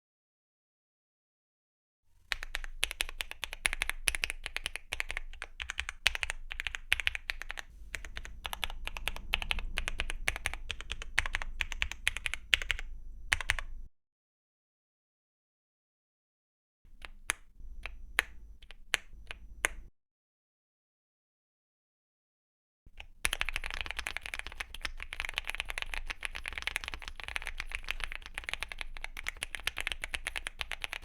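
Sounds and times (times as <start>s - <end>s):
mechanical keyboard typing: 2.3s - 13.8s, 23.0s - 31.0s.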